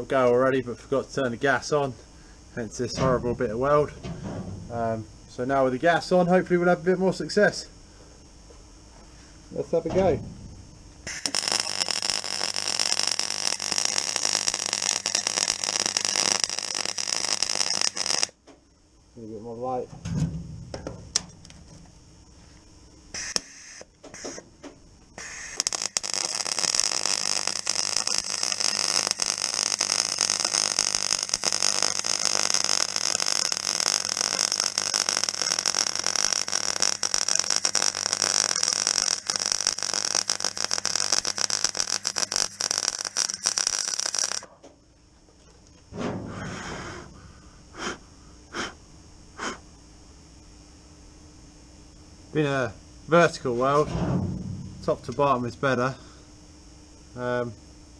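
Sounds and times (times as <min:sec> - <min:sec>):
welder arc crackling: 0:09.5 - 0:18.4, 0:23.1 - 0:24.4, 0:25.2 - 0:44.5.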